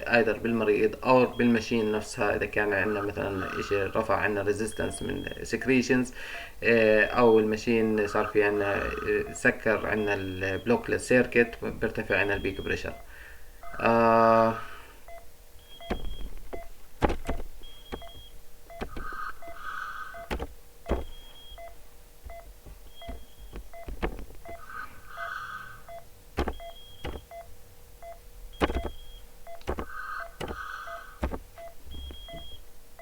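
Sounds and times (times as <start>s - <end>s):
sharp clicks: 15.7s - 21.7s, 25.9s - 27.5s, 28.6s - 32.6s.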